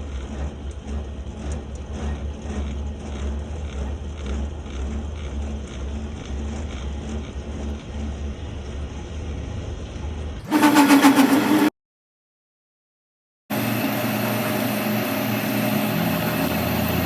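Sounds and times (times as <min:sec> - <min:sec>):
loud machine tone: 0:10.4 - 0:11.7, 0:13.5 - 0:17.0
machine humming low: 0:13.5 - 0:17.0.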